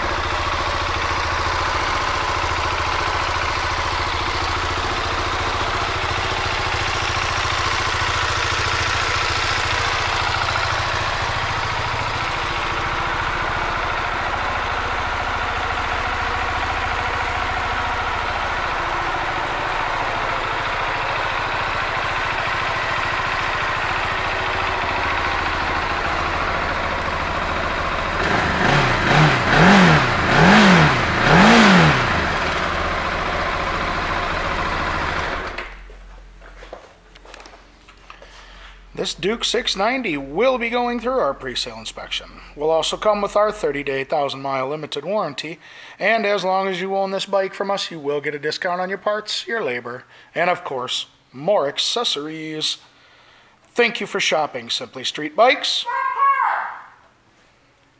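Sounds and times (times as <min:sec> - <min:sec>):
engine revving: 0:00.0 - 0:35.8
motorcycle engine idling: 0:00.0 - 0:36.4.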